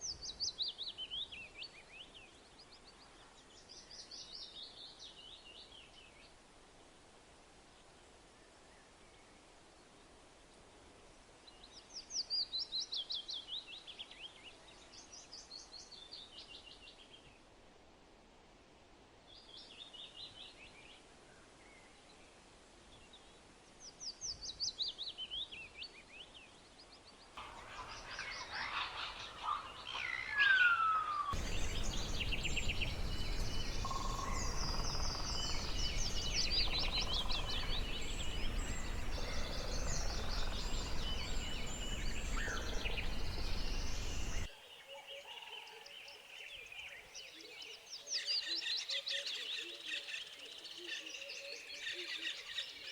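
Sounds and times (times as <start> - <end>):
steady outdoor hiss: 0.0 - 52.9
birds calling: 27.4 - 44.5
songbird trilling: 27.4 - 44.5.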